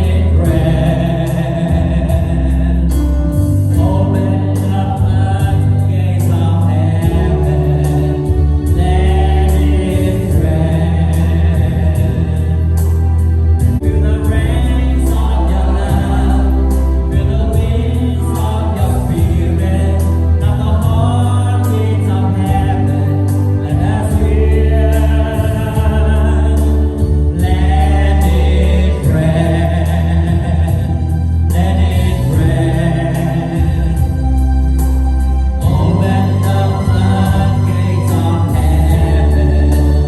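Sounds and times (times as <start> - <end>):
heavy bass: 0.0 - 40.0
choir singing: 14.0 - 34.2.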